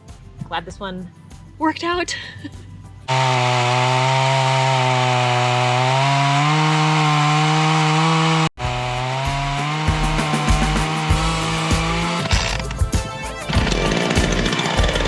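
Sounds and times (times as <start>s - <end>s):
chainsaw running: 3.1s - 15.0s.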